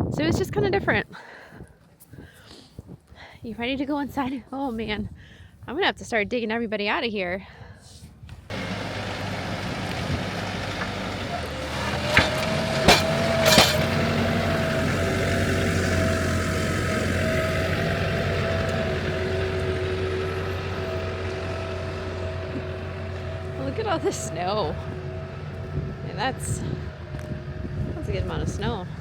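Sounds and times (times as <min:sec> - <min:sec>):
tractor engine running: 0:08.5 - 0:29.0.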